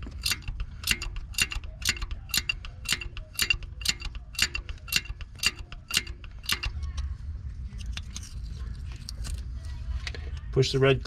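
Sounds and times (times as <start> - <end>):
ratcheting wrench clicking: 0.0 - 6.9.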